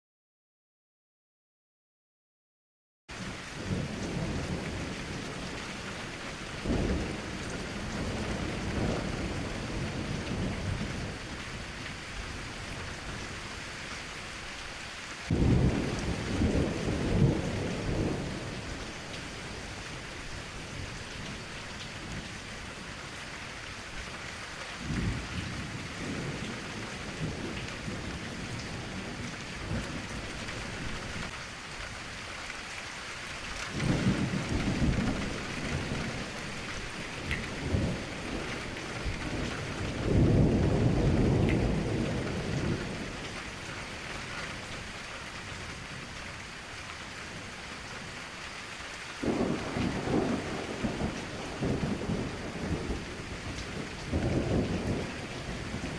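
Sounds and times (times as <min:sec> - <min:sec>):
heavy rain: 0:03.1 - 0:55.9
thunder rumbling: 0:03.6 - 0:13.6, 0:15.3 - 0:22.4, 0:24.8 - 0:31.3, 0:33.7 - 0:43.4, 0:49.2 - 0:55.9.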